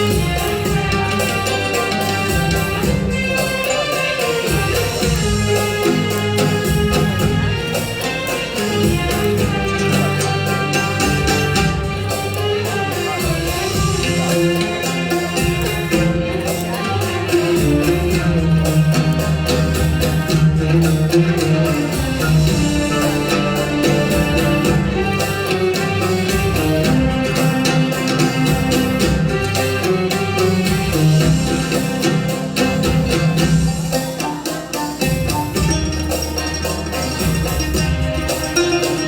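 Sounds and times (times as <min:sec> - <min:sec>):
musical accompaniment: 0:00.0 - 0:39.0
oud plucked notes: 0:00.0 - 0:39.0.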